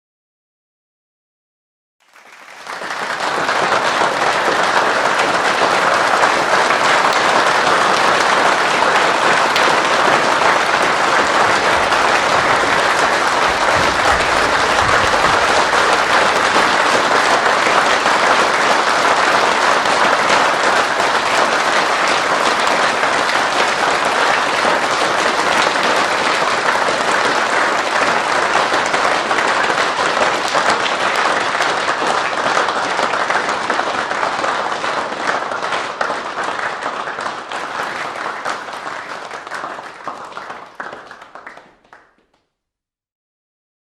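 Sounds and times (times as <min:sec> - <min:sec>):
crowd applauding: 0:02.0 - 0:42.4.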